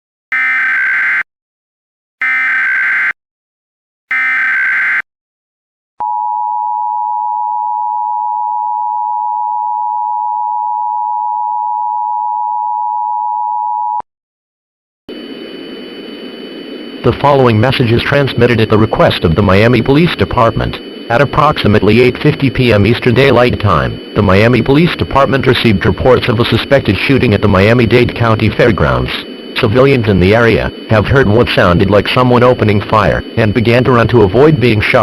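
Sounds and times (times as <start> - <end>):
two-tone alert signal: 0.3 - 1.3, 2.2 - 3.2, 4.1 - 5.0
digital data warble bursts: 17.1 - 35.0.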